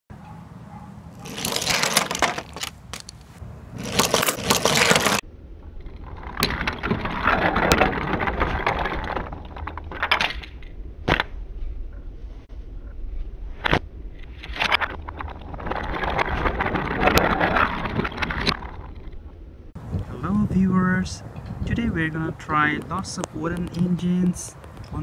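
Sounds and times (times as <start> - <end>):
wooden toy trains clattering on track: 1.2 - 3.2, 3.8 - 5.2, 5.9 - 10.6, 14.5 - 19.1.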